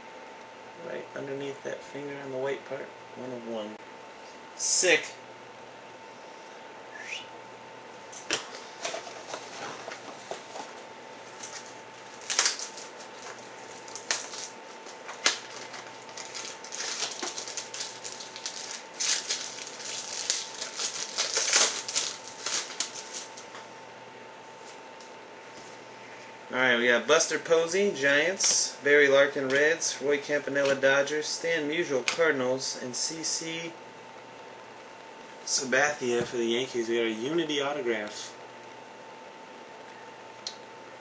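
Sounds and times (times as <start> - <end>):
packaging crinkling: 8.8 - 23.6.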